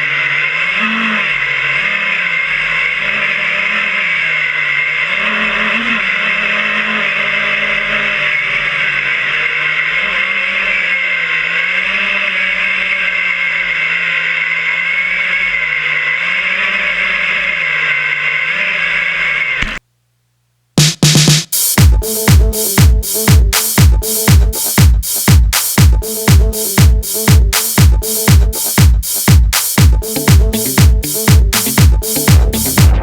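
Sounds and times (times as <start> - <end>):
drone motors whining: 0.0 - 19.8.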